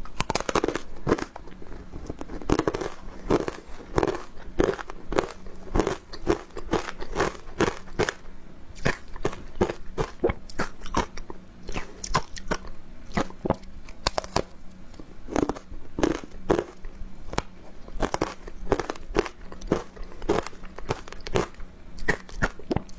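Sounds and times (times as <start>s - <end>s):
crunching of frozen ice bites: 0.2s - 1.4s, 2.2s - 8.2s.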